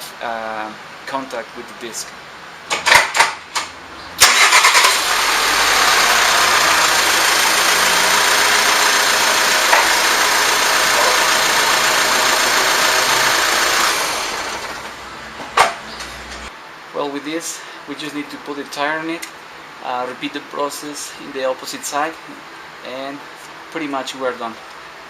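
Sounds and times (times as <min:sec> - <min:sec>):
engine starting and idling: 0:04.2 - 0:15.0.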